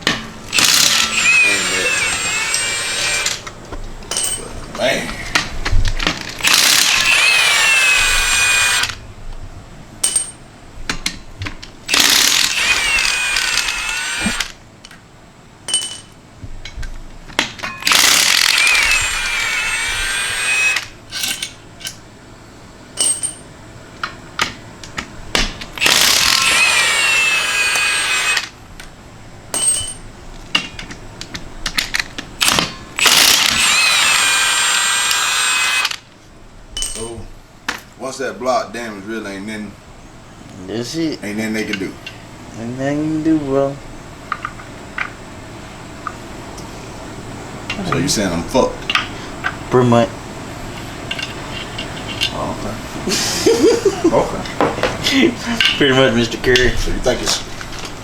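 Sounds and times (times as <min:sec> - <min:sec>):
hand tools clicking and clanking: 0:00.0 - 0:09.0, 0:15.7 - 0:22.0, 0:23.0 - 0:36.1, 0:51.0 - 0:52.6, 0:53.5 - 0:58.0
power tool motor: 0:00.5 - 0:03.5, 0:06.3 - 0:09.0, 0:11.9 - 0:14.6, 0:17.8 - 0:21.0, 0:25.8 - 0:28.6, 0:32.4 - 0:36.1.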